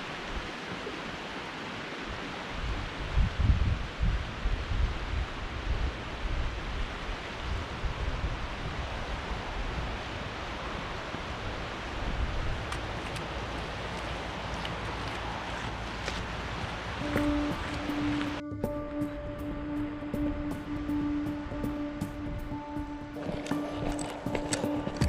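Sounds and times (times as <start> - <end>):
wind buffeting microphone: 2.1 - 18.4.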